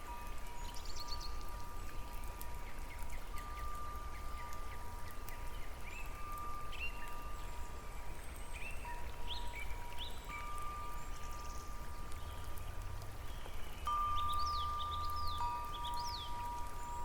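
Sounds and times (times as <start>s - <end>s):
birds chirping and trilling: 13.3s - 17.0s.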